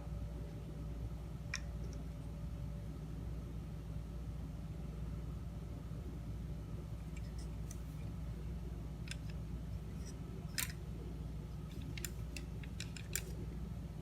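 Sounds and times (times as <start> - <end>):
steady low hum: 0.0 - 14.0
small metal parts clicking: 9.0 - 10.8, 11.6 - 13.4.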